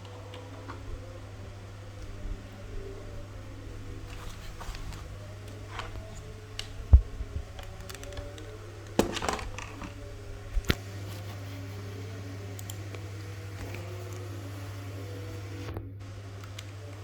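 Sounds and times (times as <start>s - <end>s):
steady low hum: 0.0s - 17.0s
objects clicking and knocking: 7.6s - 10.0s.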